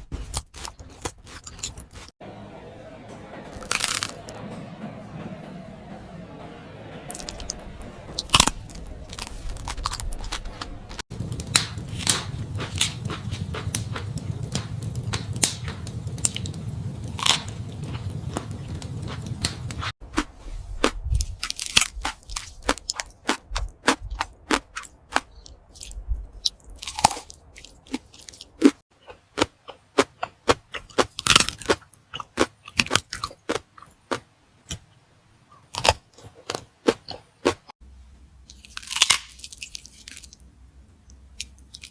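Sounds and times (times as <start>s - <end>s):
low background hum: 1.4s - 28.7s, 37.8s - 41.9s.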